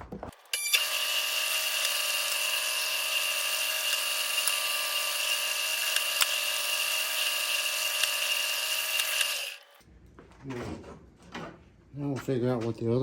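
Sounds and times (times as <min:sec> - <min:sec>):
power tool motor whining: 0:00.4 - 0:09.8.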